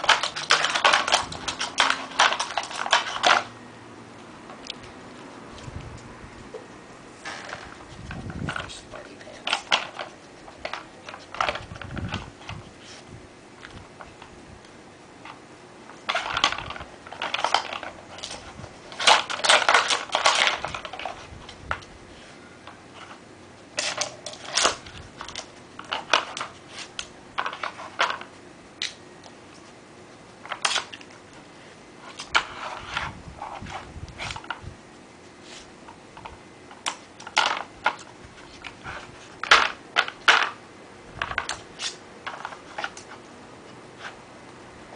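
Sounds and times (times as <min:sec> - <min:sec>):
plastic puzzle toy clattering: 0:00.0 - 0:03.5, 0:16.1 - 0:21.2, 0:36.8 - 0:38.0.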